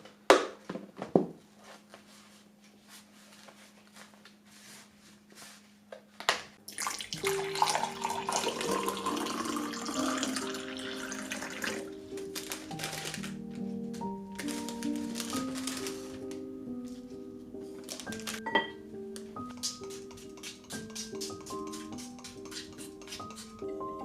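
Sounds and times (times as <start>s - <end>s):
water running from a tap: 6.6s - 11.9s
soft background music: 6.8s - 24.0s.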